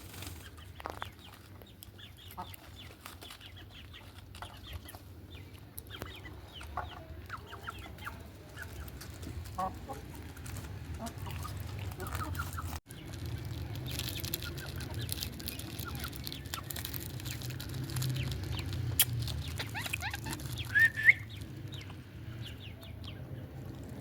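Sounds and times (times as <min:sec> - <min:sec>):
parrot chattering: 0:19.1 - 0:21.2.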